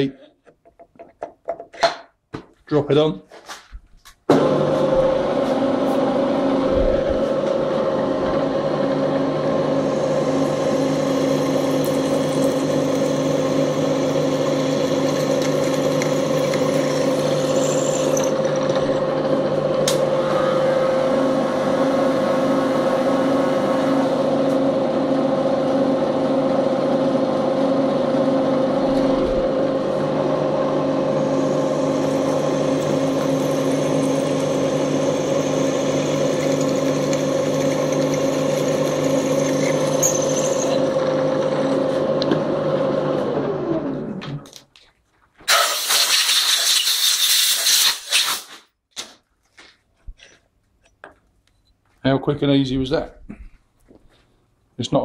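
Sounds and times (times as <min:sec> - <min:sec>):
milling machine humming: 0:04.3 - 0:44.4.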